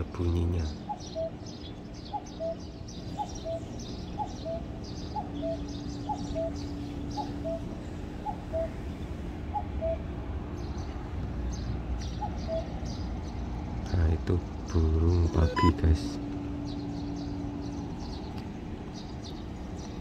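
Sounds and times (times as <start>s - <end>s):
small birds chirping: 0.0s - 20.0s
steady low hum: 0.0s - 20.0s
cuckoo calling: 0.8s - 10.2s, 12.0s - 13.2s, 15.4s - 20.0s.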